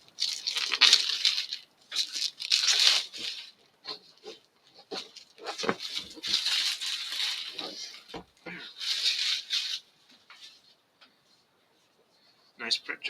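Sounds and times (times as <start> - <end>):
plastic wrap tearing: 0.0 - 9.9.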